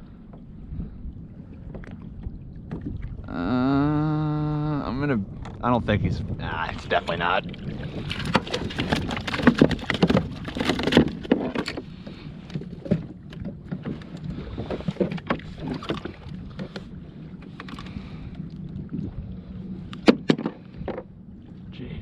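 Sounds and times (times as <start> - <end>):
water splashing: 1.6 - 16.9
knocks and clicks on kayak: 8.0 - 18.0, 19.9 - 21.1.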